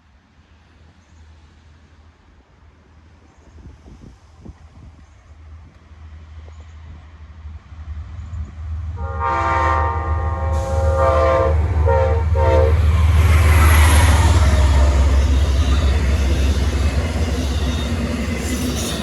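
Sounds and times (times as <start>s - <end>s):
diesel locomotive approaching: 0.0s - 19.0s
train air horn blasts: 9.0s - 15.2s.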